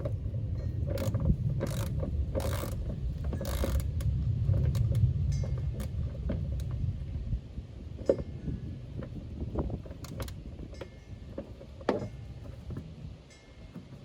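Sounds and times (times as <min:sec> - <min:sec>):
hand tool mechanical rattle: 0:00.0 - 0:05.9.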